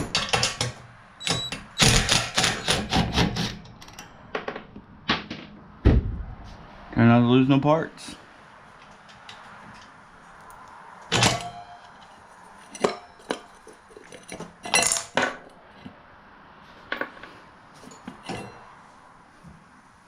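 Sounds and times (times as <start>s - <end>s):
metal brake parts clinking: 0.0s - 4.4s, 10.4s - 15.9s, 16.9s - 18.8s.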